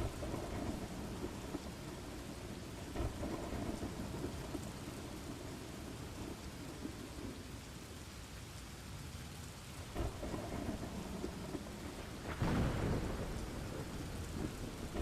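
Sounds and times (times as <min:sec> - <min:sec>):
thunder clap: 0:00.0 - 0:05.4, 0:10.0 - 0:15.0
rolling thunder: 0:00.0 - 0:07.3, 0:09.9 - 0:15.0
steady rain: 0:00.0 - 0:15.0.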